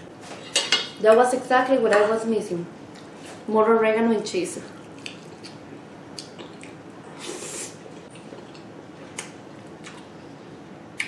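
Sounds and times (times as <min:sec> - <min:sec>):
wet chewing sounds: 0:04.8 - 0:10.2.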